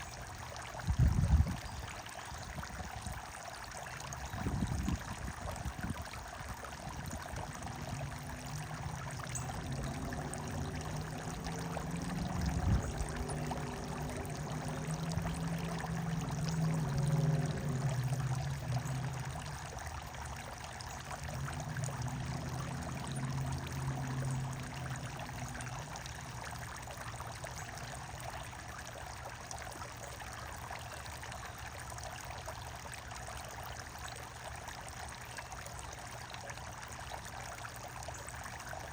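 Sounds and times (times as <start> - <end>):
water trickling and pouring: 0.0 - 38.9
low hum: 5.7 - 28.8.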